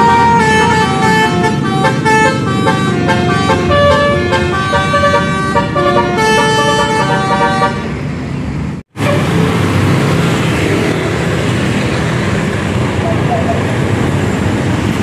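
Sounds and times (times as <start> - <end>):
bus musical horn tune: 0.0 - 8.0
traffic noise: 0.0 - 15.0.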